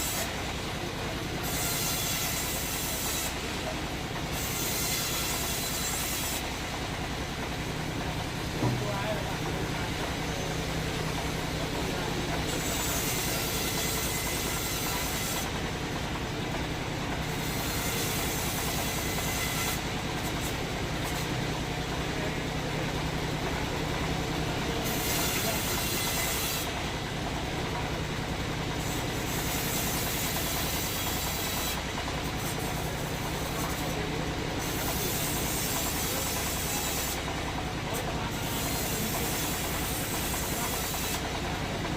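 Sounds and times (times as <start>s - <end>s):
saw hissing through wood: 0.0s - 3.7s, 4.3s - 6.7s, 10.2s - 15.6s, 17.2s - 21.4s, 24.8s - 26.8s, 28.8s - 34.0s, 34.6s - 41.5s
sawmill machinery humming: 0.0s - 41.9s.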